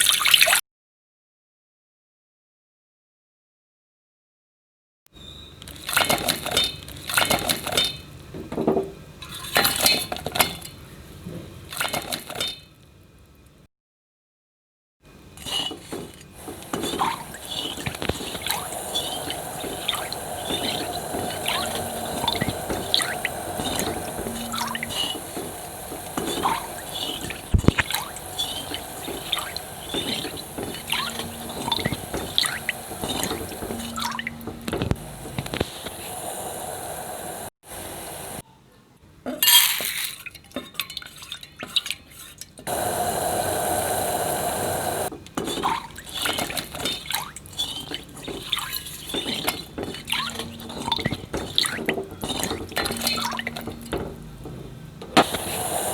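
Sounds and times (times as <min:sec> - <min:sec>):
pan hissing and crackling: 0:15.1 - 0:38.4, 0:42.6 - 0:55.9
pan clinks and clatter: 0:15.4 - 0:35.7, 0:39.3 - 0:42.7, 0:45.1 - 0:55.6.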